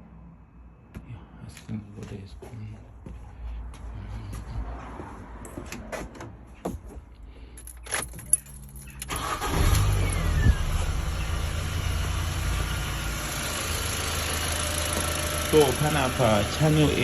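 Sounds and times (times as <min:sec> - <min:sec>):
car engine cranking and starting: 0:07.8 - 0:17.0
car engine idling: 0:08.3 - 0:17.0.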